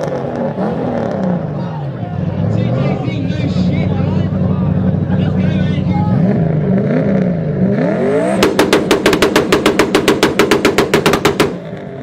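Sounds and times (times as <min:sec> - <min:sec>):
engine revving: 0:05.9 - 0:12.0
rapid exhaust cracks: 0:08.4 - 0:11.9.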